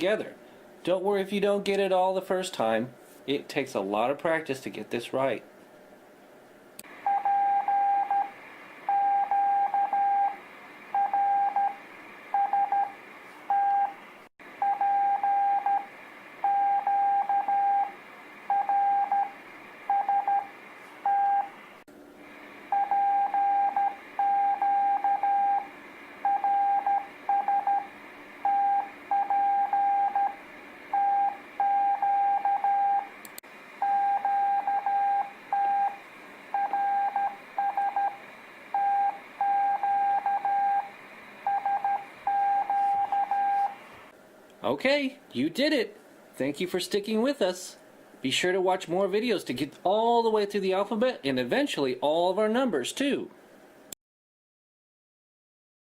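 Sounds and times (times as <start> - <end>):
morse code beeps: 7.1 - 8.3, 8.9 - 10.4, 11.0 - 11.8, 14.6 - 15.8, 16.4 - 17.9, 18.5 - 21.5, 22.7 - 25.7, 26.3 - 33.1, 33.8 - 36.0, 36.6 - 38.2, 38.8 - 40.9, 41.5 - 43.8.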